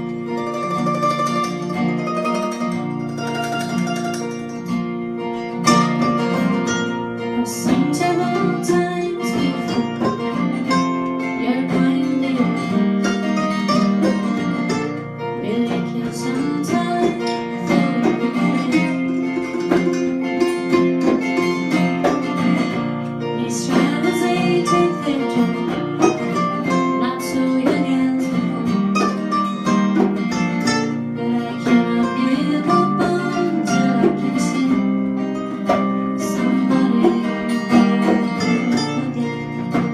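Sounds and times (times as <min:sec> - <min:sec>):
acoustic guitar strumming: 0:00.0 - 0:39.9
plucked strings: 0:00.0 - 0:39.9
person singing: 0:07.2 - 0:13.2, 0:15.3 - 0:19.9, 0:23.3 - 0:29.2, 0:31.0 - 0:39.9.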